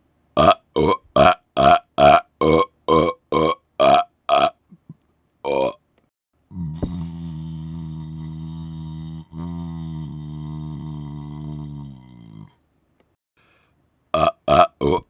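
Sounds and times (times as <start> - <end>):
man burping: 0.4 - 4.6, 5.5 - 5.8, 6.5 - 12.6, 14.2 - 15.0.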